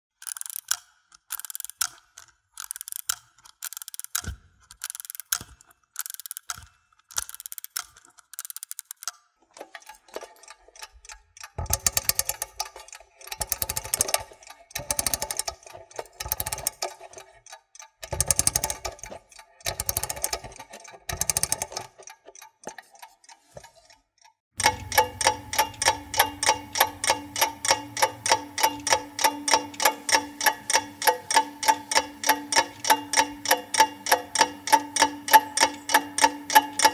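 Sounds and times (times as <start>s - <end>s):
fast clicking: 0.2s - 23.9s, 24.6s - 36.9s
clock ticking: 2.6s - 36.9s
steady ringing tone: 24.6s - 36.9s.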